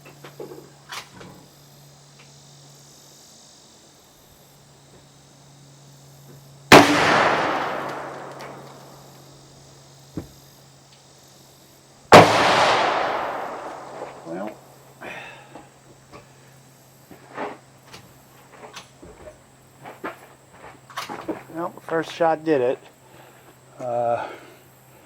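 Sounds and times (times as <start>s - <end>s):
rifle shots with echo: 6.7s - 9.1s, 12.1s - 14.5s.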